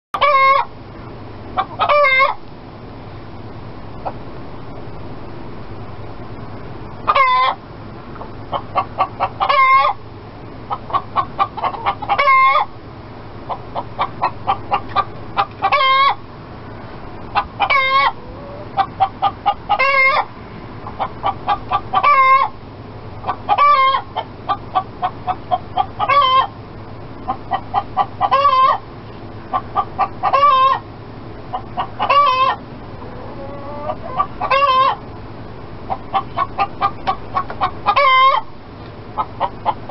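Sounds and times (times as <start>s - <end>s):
chicken cackling: 0.2s - 0.8s, 1.5s - 2.4s, 4.0s - 4.3s, 7.0s - 12.8s, 13.4s - 16.3s, 17.2s - 22.6s, 23.2s - 26.6s, 27.2s - 35.2s, 35.8s - 39.9s.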